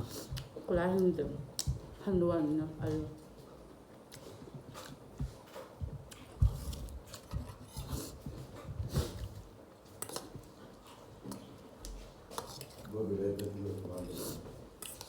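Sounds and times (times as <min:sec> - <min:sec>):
chewing with wet smacks: 0:04.0 - 0:15.0.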